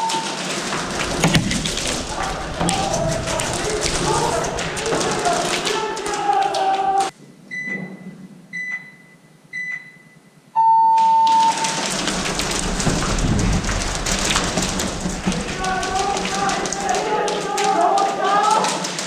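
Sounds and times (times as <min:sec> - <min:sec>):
crackling: 0:00.0 - 0:07.1, 0:11.5 - 0:19.0
din of voices: 0:00.5 - 0:07.1, 0:11.8 - 0:18.9.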